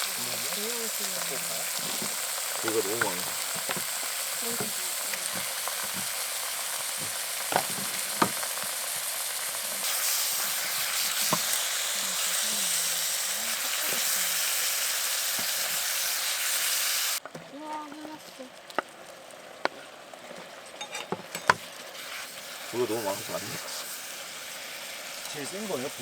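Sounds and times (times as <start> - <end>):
food sizzling in a hot pan: 0.0 - 26.0
utensil knocking against pan: 7.0 - 8.5, 20.8 - 21.6.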